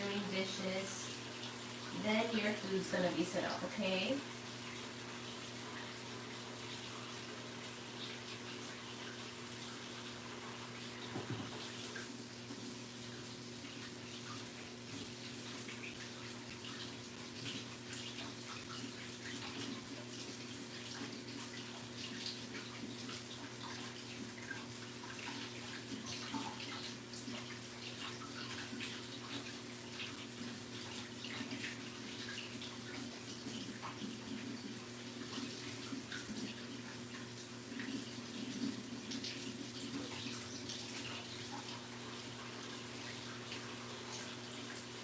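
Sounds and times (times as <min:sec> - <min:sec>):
tap running into sink: 0:11.0 - 0:12.0.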